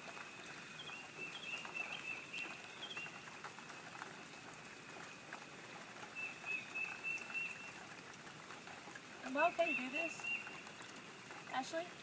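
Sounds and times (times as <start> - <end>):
nestling birds cheeping: 9.5 - 10.8.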